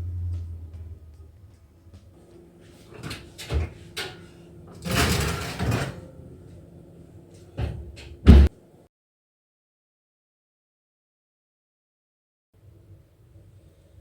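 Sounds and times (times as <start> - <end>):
heavy thump: 7.6 - 8.5.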